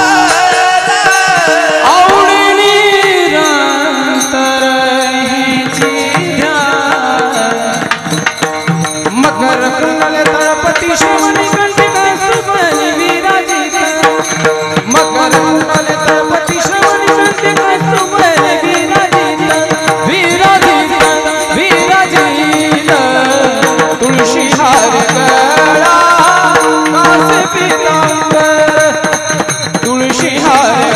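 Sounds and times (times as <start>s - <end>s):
hand drum and percussion: 0.0s - 30.9s
man singing devotional song: 0.0s - 30.9s.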